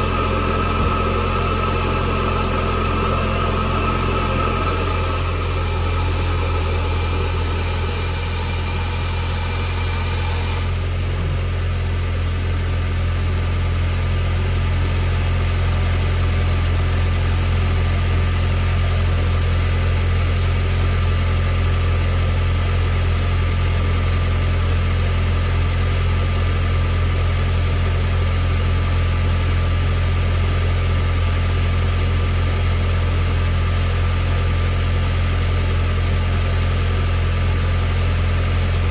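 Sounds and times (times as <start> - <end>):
faint high whine: 0.0 - 12.2
car engine idling: 0.0 - 38.9.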